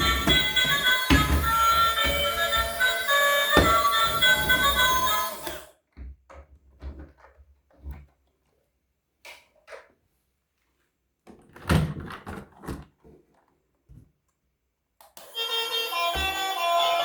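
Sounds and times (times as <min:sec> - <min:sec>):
knocks: 0:00.0 - 0:05.2
objects clattering being handled: 0:00.0 - 0:05.6
music: 0:00.0 - 0:05.7, 0:15.2 - 0:17.0.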